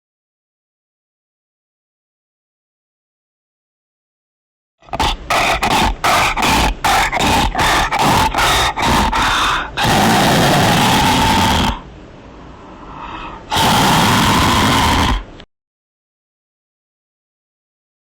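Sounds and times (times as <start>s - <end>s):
creature short calls: 4.9s - 11.8s, 13.0s - 15.4s
creature long call: 4.9s - 11.9s, 13.0s - 15.4s.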